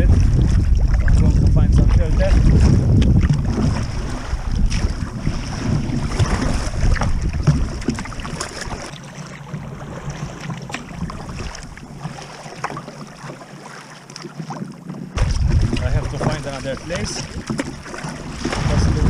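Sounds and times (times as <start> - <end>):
wind buffeting microphone: 0.0 - 8.9, 15.1 - 19.0
water splashing against hull: 0.0 - 19.0.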